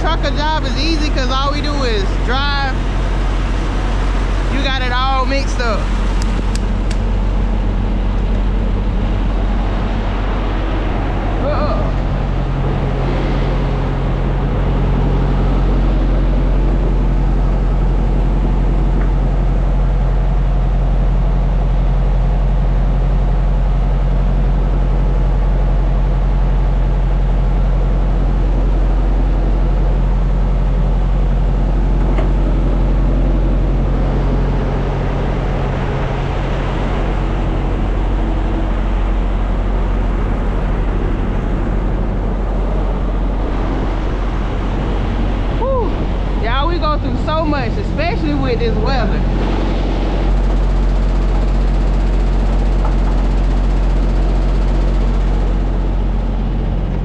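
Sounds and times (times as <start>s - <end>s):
diesel truck engine droning: 0.0s - 57.0s.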